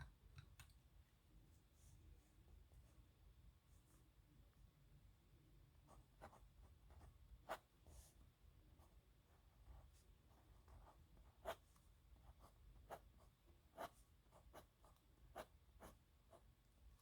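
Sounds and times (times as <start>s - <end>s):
pen scratching on paper: 9.6s - 16.4s.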